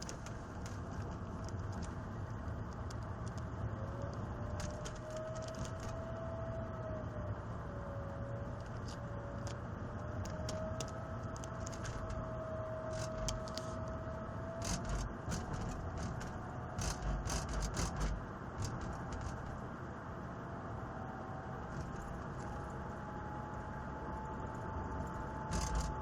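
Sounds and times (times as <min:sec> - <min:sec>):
vehicle engine running: 0:08.5 - 0:26.0
clicks and rattles: 0:14.6 - 0:19.6, 0:25.5 - 0:26.0.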